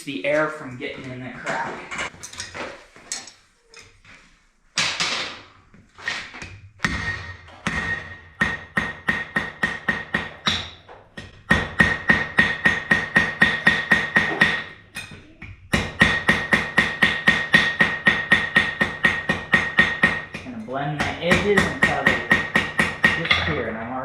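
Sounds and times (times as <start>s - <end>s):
hammer striking steel on anvil: 6.8s - 23.8s.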